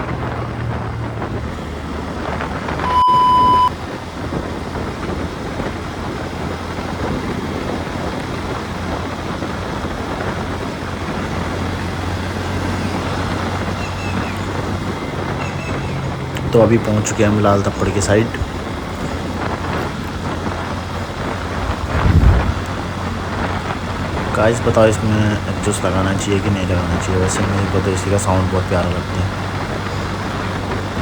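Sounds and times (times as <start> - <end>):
motorcycle running: 0.0 - 31.0
wind rushing over microphone: 0.0 - 31.0
high electronic beep: 2.8 - 3.7
tyre noise: 4.4 - 31.0.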